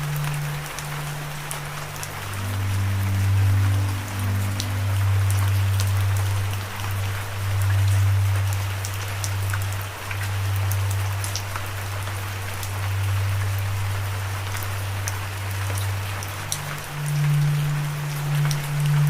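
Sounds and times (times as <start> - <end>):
low sustained tone: 0.0 - 19.0
raindrops ticking: 0.0 - 19.0
steady rain falling: 0.0 - 19.0.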